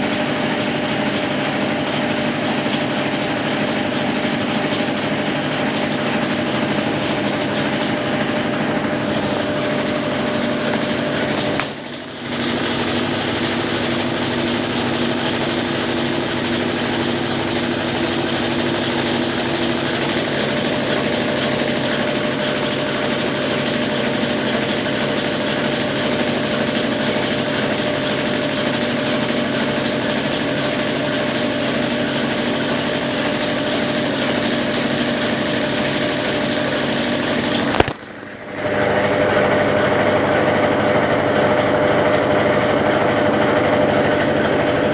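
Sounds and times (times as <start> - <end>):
washing machine agitating: 0.0 - 44.9.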